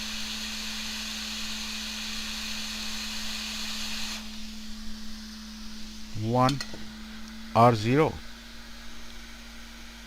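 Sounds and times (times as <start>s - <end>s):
low electrical hum: 2.1s - 10.0s.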